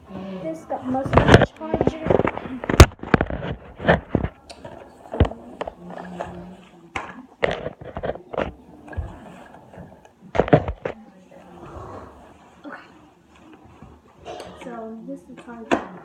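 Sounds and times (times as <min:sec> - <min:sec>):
cardboard and plastic rustling: 0:00.7 - 0:06.1, 0:07.0 - 0:11.0.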